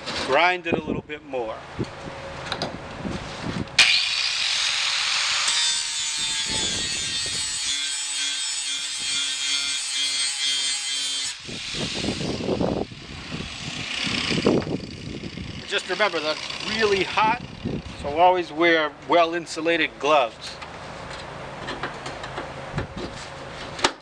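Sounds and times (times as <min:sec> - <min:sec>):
grinder grinding steel: 0:03.8 - 0:18.0.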